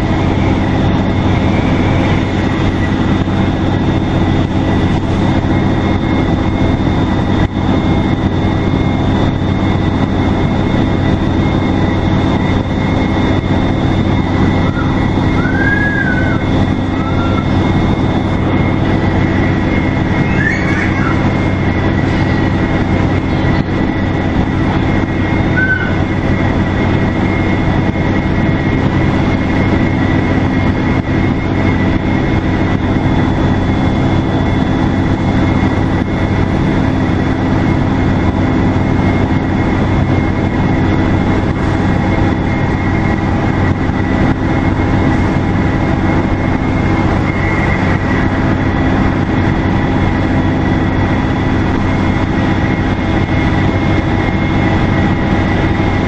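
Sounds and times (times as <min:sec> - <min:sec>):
bus diesel engine drone: 0:00.0 - 0:56.0
high-pitched turbocharger whistle: 0:14.3 - 0:22.6, 0:25.3 - 0:26.3.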